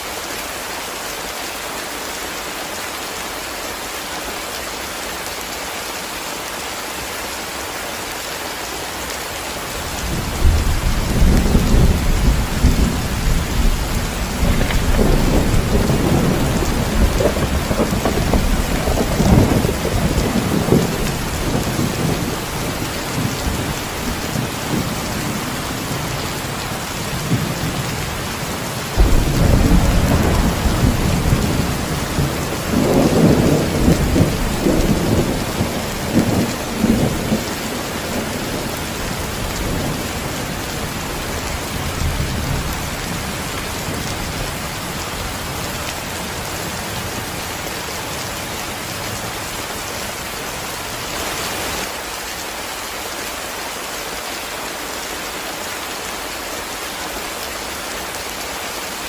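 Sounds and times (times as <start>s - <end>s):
heavy rain falling: 0.0s - 59.0s
thunder rumbling: 9.8s - 45.6s.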